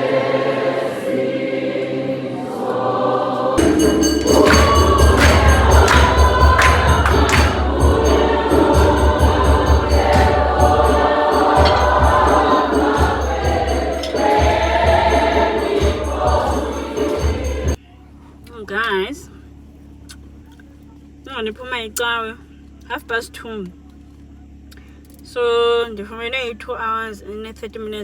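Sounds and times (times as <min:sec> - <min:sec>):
gospel choir singing: 0:00.0 - 0:17.8
deep pulsing bass: 0:03.6 - 0:17.8
percussion hits: 0:03.6 - 0:17.8.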